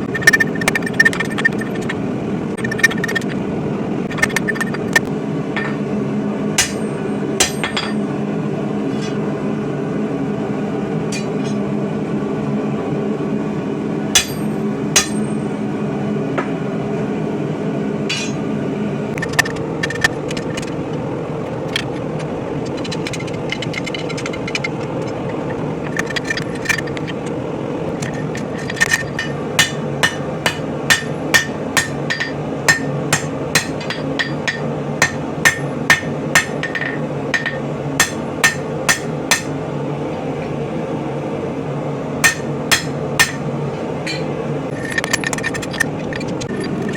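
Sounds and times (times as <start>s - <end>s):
background hum: 0.0s - 46.9s
hammer striking steel on anvil: 6.6s - 8.0s, 11.1s - 11.6s, 14.2s - 15.5s, 18.1s - 18.4s, 29.0s - 39.6s, 42.2s - 44.4s.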